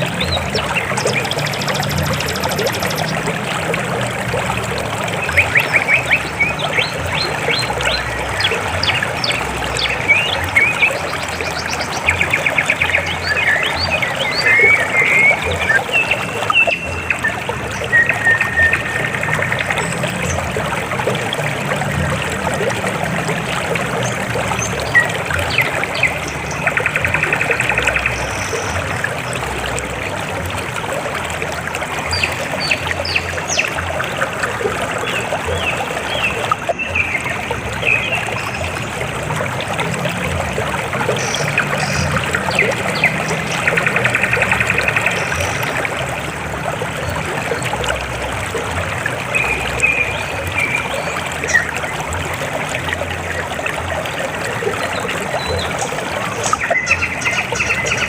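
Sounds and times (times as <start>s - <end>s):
river water rushing: 0.0s - 58.0s
birds chirping: 5.0s - 21.2s.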